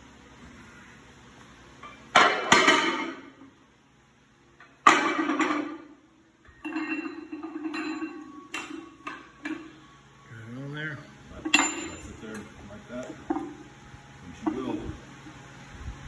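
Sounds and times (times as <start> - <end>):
weight plates clanking: 6.6 - 9.7, 11.4 - 12.2.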